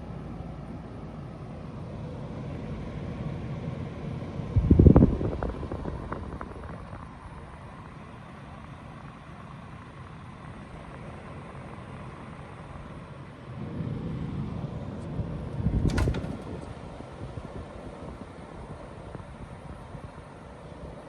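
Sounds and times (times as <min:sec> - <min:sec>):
air conditioner whoosh: 0:10.5 - 0:20.2.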